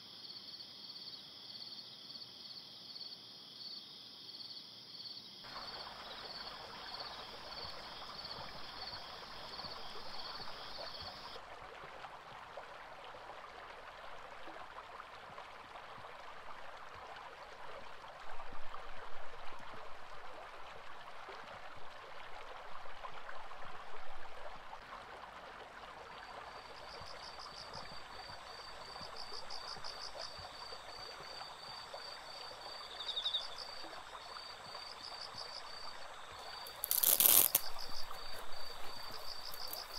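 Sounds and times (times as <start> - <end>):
insects chirping in rapid pulses: 0.0 - 11.4, 27.0 - 39.9
stream water rushing: 5.5 - 26.8, 35.7 - 39.9.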